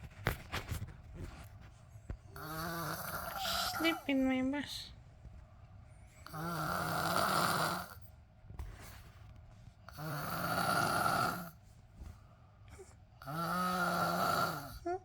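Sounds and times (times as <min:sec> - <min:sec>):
person snoring: 0:02.3 - 0:04.0, 0:06.2 - 0:08.0, 0:09.9 - 0:11.6, 0:13.2 - 0:14.9
quiet breathing: 0:05.2 - 0:14.9.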